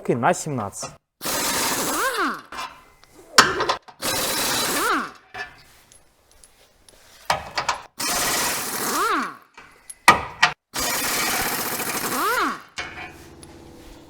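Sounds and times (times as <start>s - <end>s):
power wrench running: 1.2s - 2.8s, 3.6s - 5.3s, 7.5s - 9.4s, 10.1s - 14.0s.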